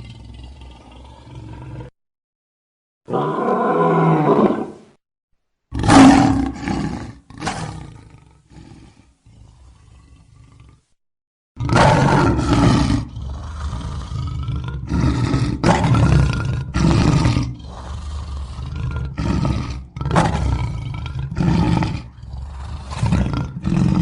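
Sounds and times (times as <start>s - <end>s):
lion roaring: 0.0s - 1.9s, 3.1s - 4.8s, 5.7s - 11.0s, 11.6s - 24.0s
lion grunts: 5.8s - 11.0s, 11.6s - 24.0s.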